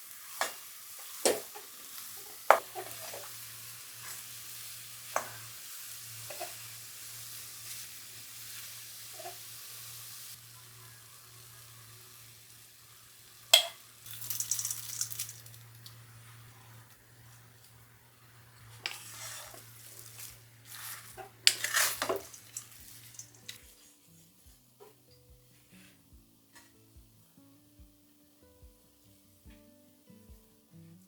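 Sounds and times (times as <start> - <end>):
food sizzling in hot oil: 0.0 - 23.9
utensils rattling: 18.8 - 23.7.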